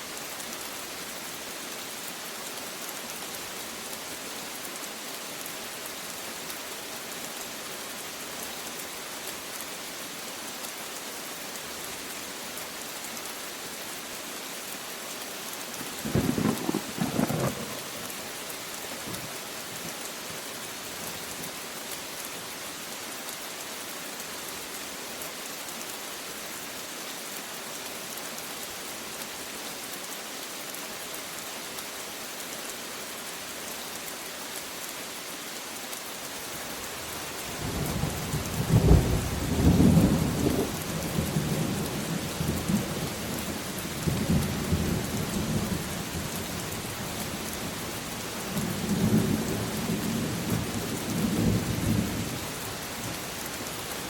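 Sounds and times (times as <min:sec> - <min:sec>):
heavy rain: 0:00.0 - 0:54.0
thunder rumbling: 0:16.0 - 0:18.0.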